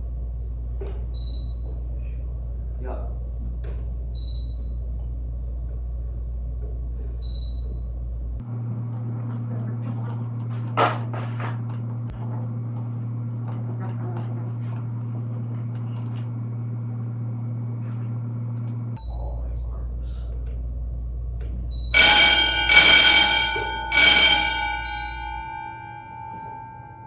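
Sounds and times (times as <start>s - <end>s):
electrical hum: 0.0s - 27.0s
fire alarm bells ringing: 8.6s - 18.9s, 21.9s - 27.0s.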